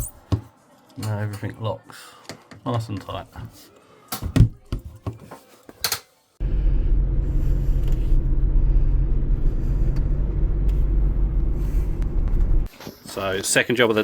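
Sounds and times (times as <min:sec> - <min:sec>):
vehicle engine and road noise: 0:06.4 - 0:12.7.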